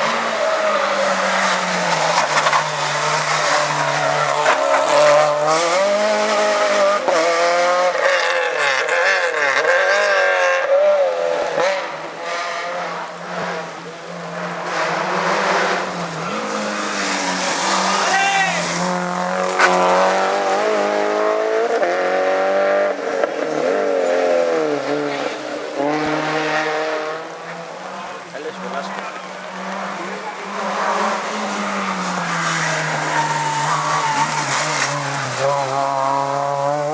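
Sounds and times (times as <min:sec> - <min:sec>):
rally car engine at full throttle: 0:00.0 - 0:36.9.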